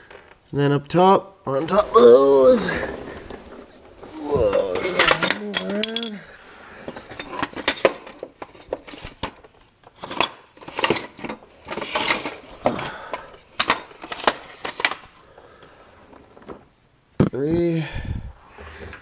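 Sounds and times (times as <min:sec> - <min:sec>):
metal hand tools clinking: 0:04.6 - 0:06.2.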